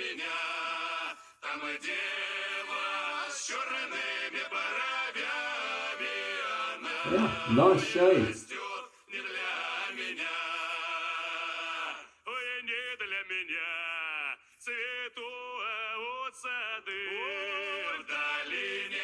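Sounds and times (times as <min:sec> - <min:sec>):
man singing long held notes: 0:07.0 - 0:08.5.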